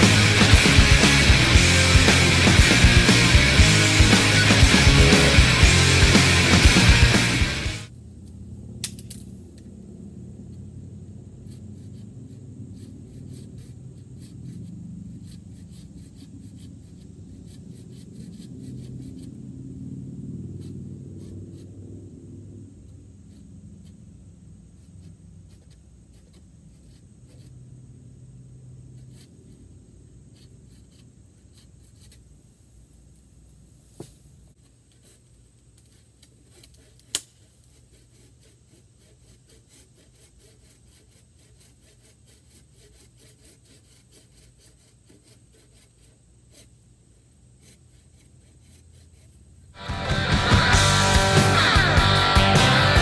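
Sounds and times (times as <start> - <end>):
low hum: 0.0 - 11.3, 49.8 - 53.0.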